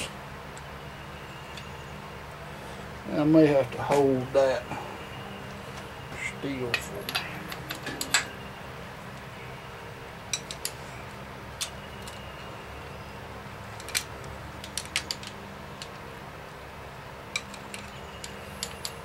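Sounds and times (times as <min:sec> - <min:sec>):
steady low hum: 0:00.0 - 0:19.0
socket wrench clinking on bolts: 0:17.4 - 0:19.0.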